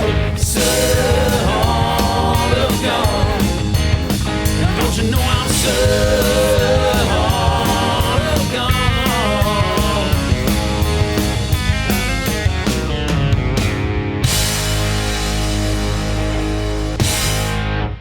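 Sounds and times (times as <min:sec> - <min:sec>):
person singing: 0:00.0 - 0:03.8, 0:04.6 - 0:10.4
rock band playing: 0:00.0 - 0:18.0.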